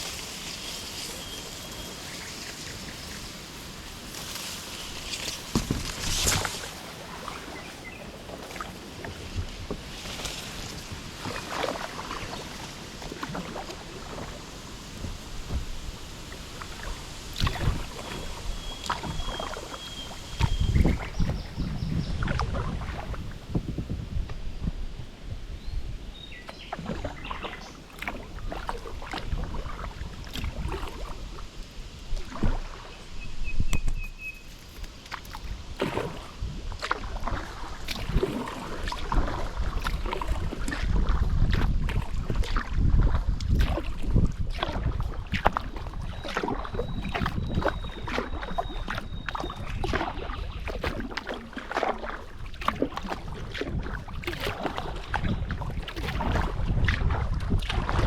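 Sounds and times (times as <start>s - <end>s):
paddle splashing in water: 0.0s - 58.0s
wind rumble on microphone: 0.0s - 58.0s
water dripping off paddle: 11.2s - 21.4s, 26.4s - 32.9s, 34.8s - 58.0s.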